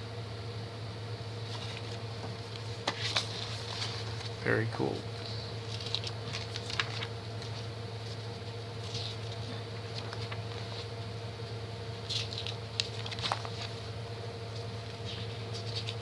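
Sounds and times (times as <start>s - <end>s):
low electrical hum: 0.0s - 16.0s
faint packaging rustling: 12.0s - 13.9s.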